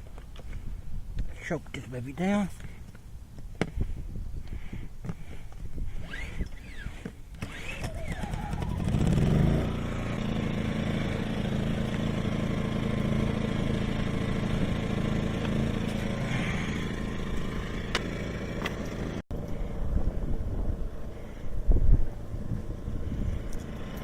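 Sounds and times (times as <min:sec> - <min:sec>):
portable generator running: 0:05.9 - 0:19.2.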